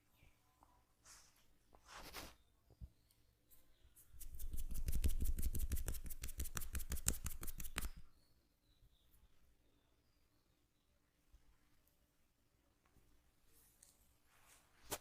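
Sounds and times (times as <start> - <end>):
hands tapping on head: 4.2 - 8.0.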